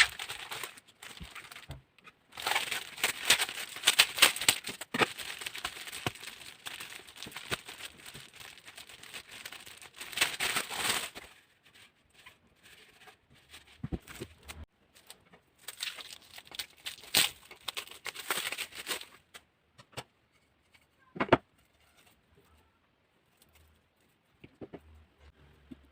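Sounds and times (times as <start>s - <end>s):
packaging rustling and crinkling: 0.0s - 19.3s.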